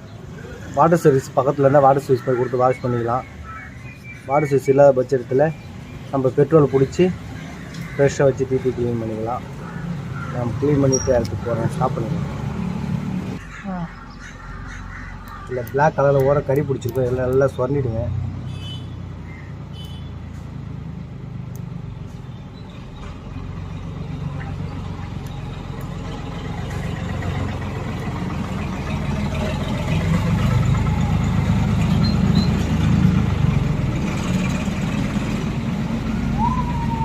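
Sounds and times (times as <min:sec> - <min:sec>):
passing vehicle engine rumble: 0:00.0 - 0:37.0
siren-like wail: 0:36.0 - 0:37.0.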